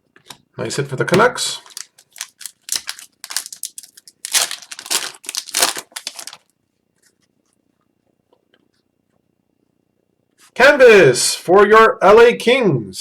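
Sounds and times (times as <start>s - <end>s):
wrapper crinkling: 1.5s - 6.5s
cards rustling: 1.6s - 7.2s.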